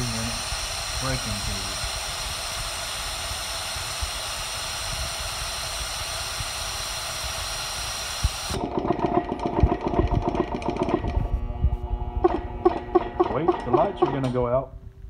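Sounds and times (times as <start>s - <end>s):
compressed air hissing: 0.0s - 8.6s
electric motor pulsing hum: 0.0s - 14.5s.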